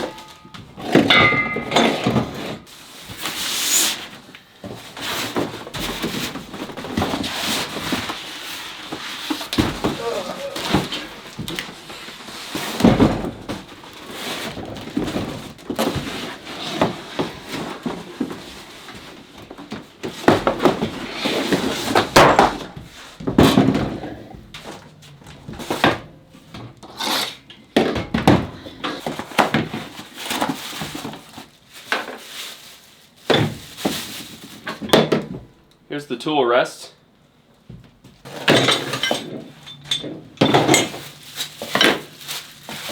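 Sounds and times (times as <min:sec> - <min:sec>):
wooden parts knocking and thunking: 0:00.0 - 0:02.6, 0:04.6 - 0:31.2, 0:34.6 - 0:35.6
rustling: 0:28.6 - 0:34.8, 0:40.5 - 0:42.9.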